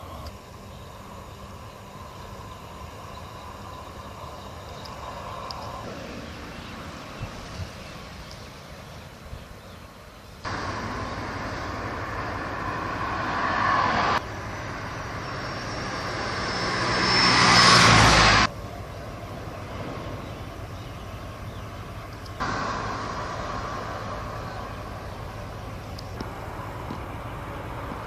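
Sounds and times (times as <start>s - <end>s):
vehicle passing: 10.5s - 28.0s.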